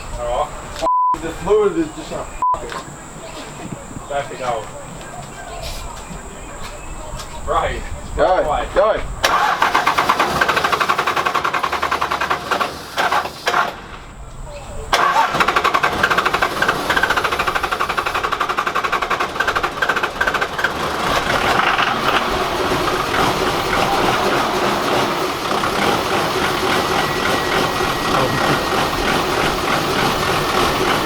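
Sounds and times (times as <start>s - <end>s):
diesel engine cranking: 0.0s - 5.0s, 8.2s - 31.0s
diesel engine idling: 7.4s - 31.0s.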